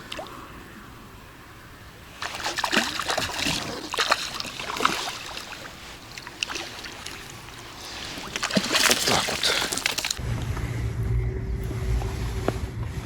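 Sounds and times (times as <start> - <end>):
water splashing and sloshing: 0.0 - 1.2, 1.8 - 10.2.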